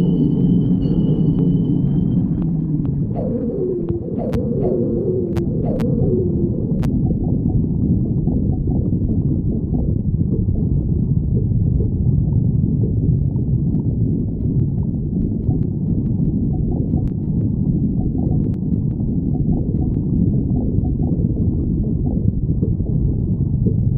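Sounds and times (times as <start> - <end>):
stomach growling: 0.0 - 23.9
faint clicks: 14.4 - 20.0.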